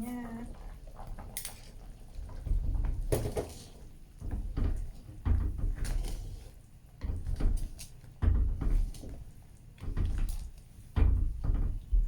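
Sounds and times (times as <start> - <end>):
dull knocks and clunks: 4.2 - 5.8, 8.2 - 12.0.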